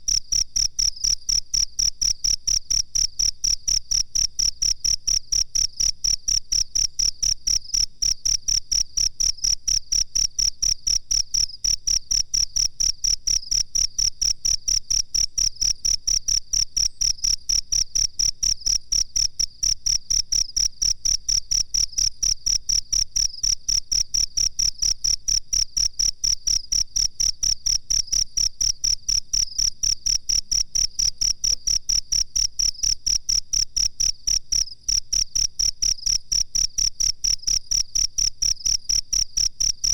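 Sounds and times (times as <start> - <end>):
cricket chirping: 0.1 - 39.9.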